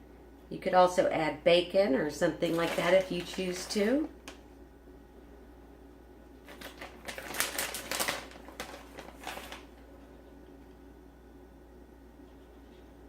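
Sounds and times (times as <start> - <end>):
plastic bag crinkling: 2.4 - 4.4, 6.4 - 10.0.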